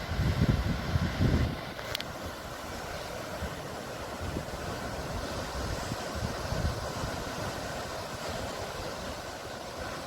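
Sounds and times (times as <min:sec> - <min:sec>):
sea rushing: 0:00.0 - 0:10.0
wind buffeting microphone: 0:00.0 - 0:10.0.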